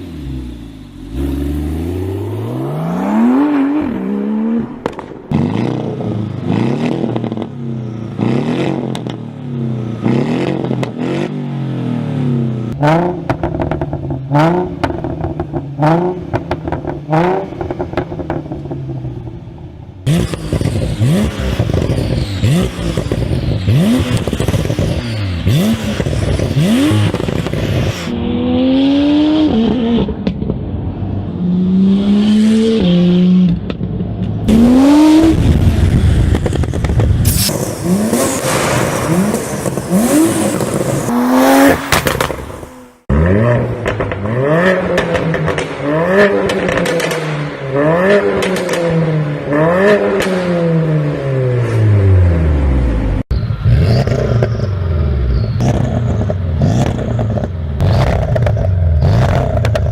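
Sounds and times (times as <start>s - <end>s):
car engines revving: 0.0s - 59.9s
exhaust pops and crackles: 4.8s - 5.5s, 33.5s - 41.1s, 41.9s - 42.6s, 43.6s - 47.4s, 48.4s - 48.9s, 55.6s - 59.9s.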